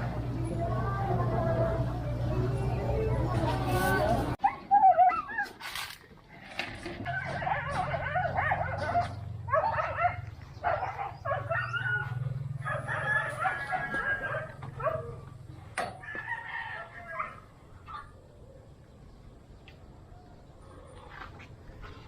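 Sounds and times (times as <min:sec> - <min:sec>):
low steady hum: 0:00.0 - 0:04.5
roosters crowing: 0:07.0 - 0:18.2.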